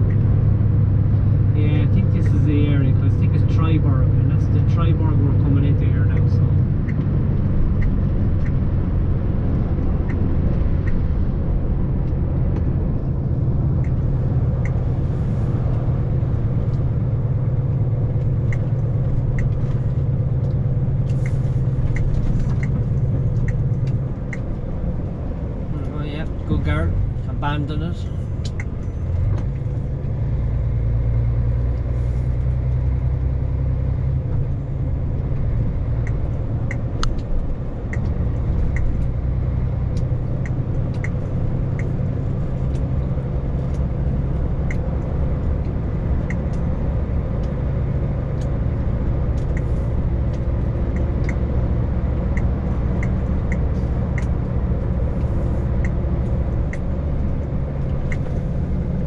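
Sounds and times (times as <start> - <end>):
vehicle engine and road noise: 0.0 - 59.0
faint regular ticks: 45.6 - 59.0.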